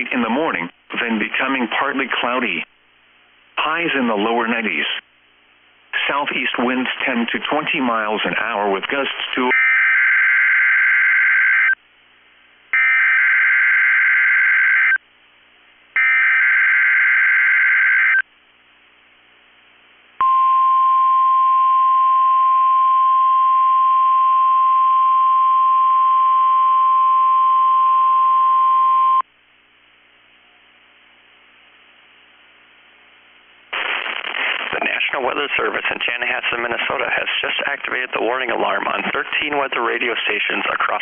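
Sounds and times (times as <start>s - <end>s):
steady warning alarm tone: 9.5s - 11.8s, 12.8s - 15.0s, 16.0s - 18.2s.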